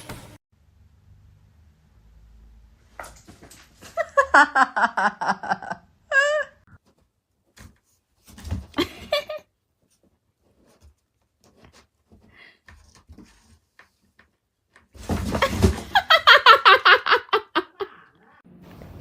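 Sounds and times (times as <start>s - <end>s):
person laughing loudly: 4.0s - 6.6s, 15.8s - 18.2s.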